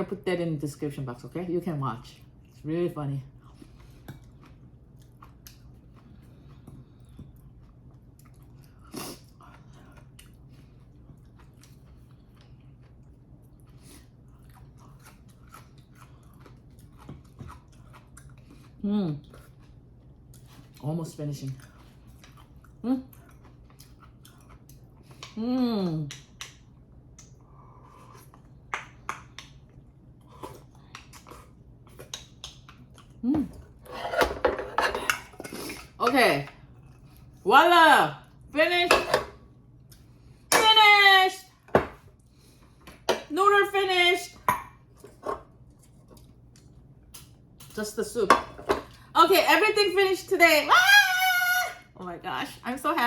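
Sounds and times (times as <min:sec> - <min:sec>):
chewing and biting: 0:03.5 - 0:20.8, 0:21.5 - 0:25.4
clicks and taps of eating: 0:32.0 - 0:32.8.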